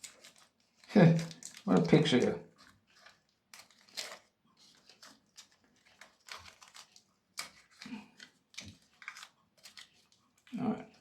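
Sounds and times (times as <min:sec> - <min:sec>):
hands handling cable and tape: 0:00.0 - 0:11.0.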